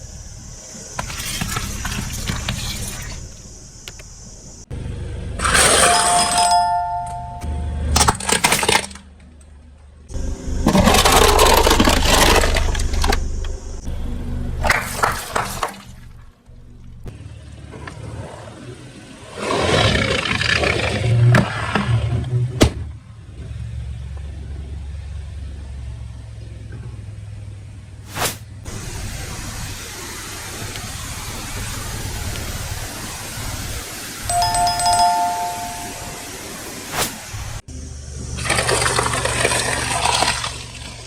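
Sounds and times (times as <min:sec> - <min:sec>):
objects crushed under tyres: 0:08.0 - 0:09.1, 0:10.5 - 0:13.4
car engine running: 0:10.1 - 0:14.7.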